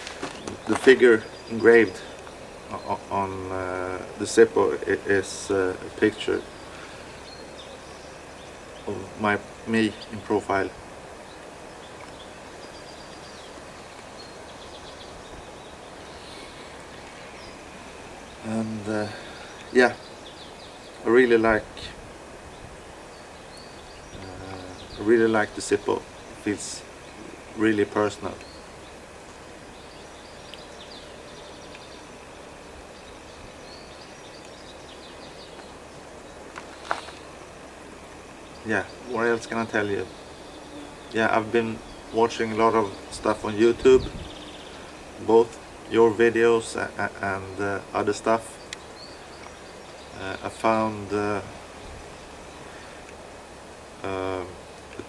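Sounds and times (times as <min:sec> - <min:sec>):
outdoor background noise: 0:00.0 - 0:55.0
small birds chirping: 0:00.0 - 0:55.0
wind hiss: 0:00.0 - 0:55.0
bird chirps: 0:38.4 - 0:51.5.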